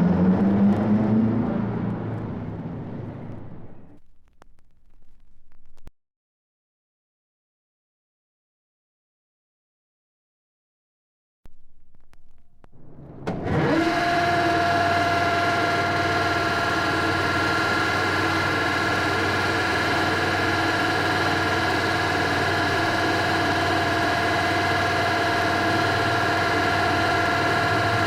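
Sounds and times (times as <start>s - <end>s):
machine whining and humming: 0.0s - 4.4s, 11.5s - 28.0s.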